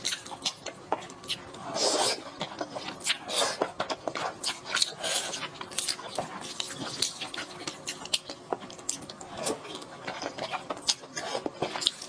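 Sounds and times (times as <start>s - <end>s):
chewing sounds: 0.0s - 12.0s.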